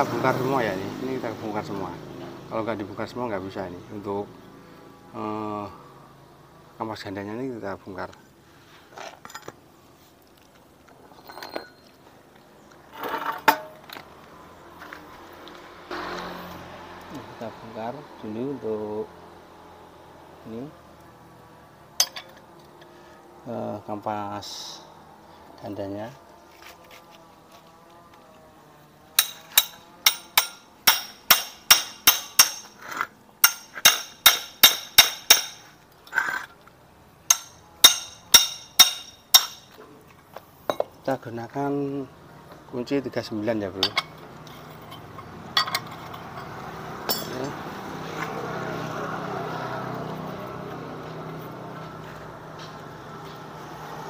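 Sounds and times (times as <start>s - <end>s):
metal tools and parts clinking: 8.9s - 9.6s, 11.0s - 12.0s, 12.9s - 14.0s, 22.0s - 22.4s, 29.2s - 36.6s, 37.3s - 39.8s, 43.8s - 47.6s
hammer striking metal: 29.2s - 32.8s, 33.4s - 35.7s, 37.3s - 39.8s, 47.1s - 47.6s
sharp ringing metal knock: 37.3s - 39.7s.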